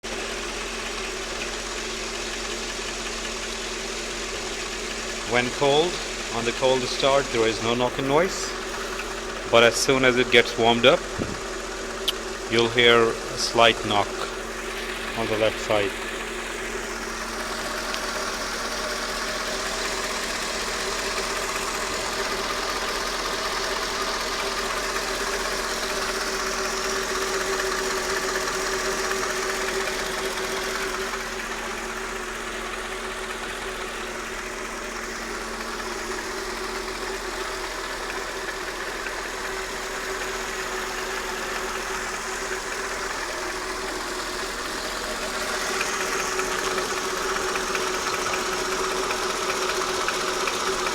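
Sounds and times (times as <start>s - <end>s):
car engine idling: 0.0s - 50.9s.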